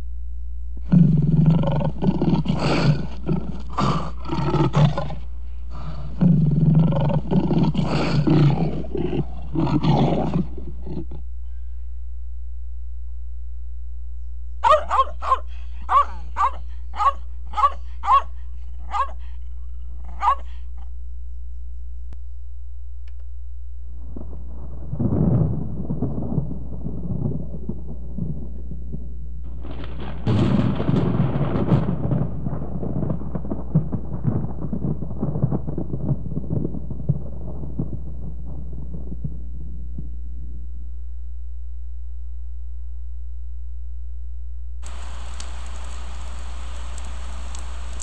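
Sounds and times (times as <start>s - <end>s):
big cat roaring: 0.8s - 11.2s
dog short high barks: 14.6s - 19.2s, 20.1s - 20.5s.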